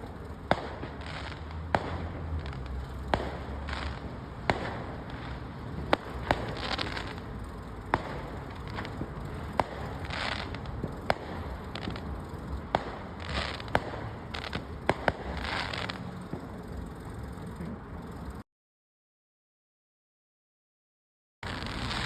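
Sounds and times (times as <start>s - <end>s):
fireworks bangs: 0.0s - 17.9s, 21.4s - 22.0s
fireworks crackling: 0.0s - 18.4s, 21.4s - 22.0s.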